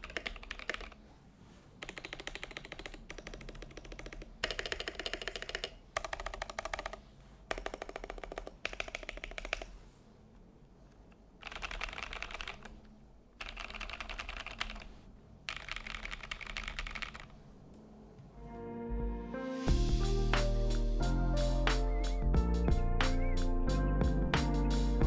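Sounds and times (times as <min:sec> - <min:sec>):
rapid mechanical keyboard typing: 0:00.0 - 0:01.0, 0:01.8 - 0:09.8, 0:11.4 - 0:12.8, 0:13.4 - 0:14.9, 0:15.5 - 0:17.4.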